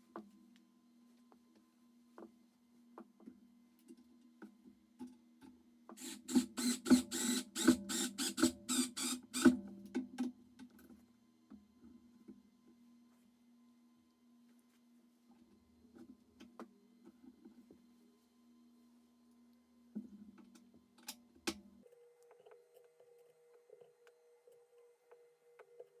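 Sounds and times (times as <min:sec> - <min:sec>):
screwdriver rasping clicks: 0:06.0 - 0:09.5.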